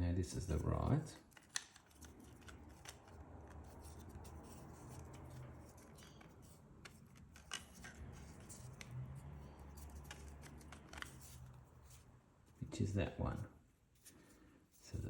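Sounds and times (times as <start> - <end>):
plastic parts clicking: 1.2 - 9.0, 9.6 - 11.5.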